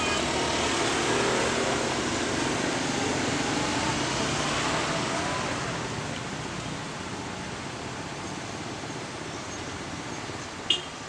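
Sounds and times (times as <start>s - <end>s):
vehicles passing: 0.0s - 11.0s.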